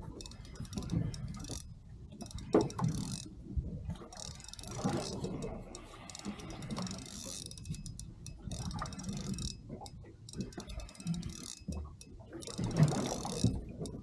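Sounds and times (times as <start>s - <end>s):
fishing reel ticking: 0.0s - 14.0s.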